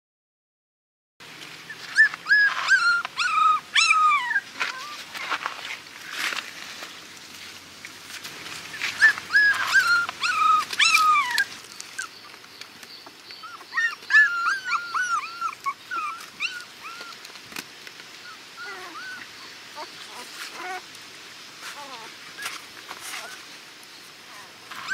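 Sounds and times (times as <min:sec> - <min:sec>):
puppies whimpering: 0:01.7 - 0:05.3, 0:08.7 - 0:12.4, 0:13.0 - 0:17.3, 0:18.2 - 0:20.9, 0:21.7 - 0:23.4, 0:24.3 - 0:24.9.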